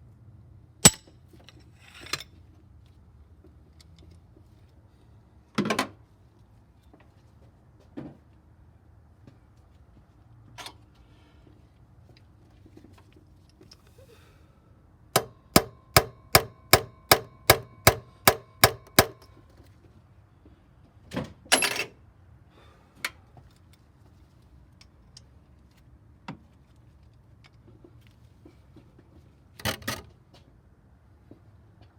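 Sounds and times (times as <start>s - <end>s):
hammer striking chisel: 0.8s - 1.1s, 15.2s - 19.2s
metal clatter: 0.8s - 2.2s.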